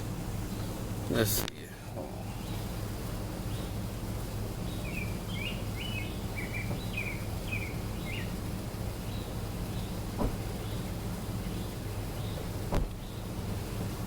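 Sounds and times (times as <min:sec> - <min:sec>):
steady low hum: 0:00.0 - 0:14.0
songbird chirping: 0:03.4 - 0:13.6.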